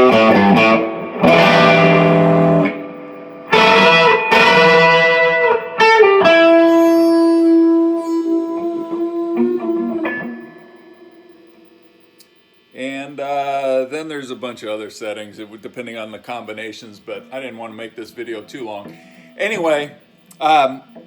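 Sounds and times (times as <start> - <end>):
electric guitar chords ringing: 0.0 - 12.7
electric guitar held note: 3.5 - 12.2.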